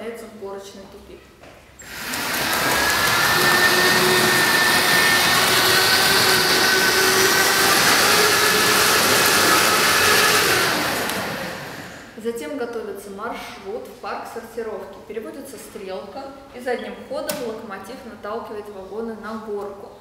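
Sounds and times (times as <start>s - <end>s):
model locomotive motor whirring: 1.8s - 12.1s.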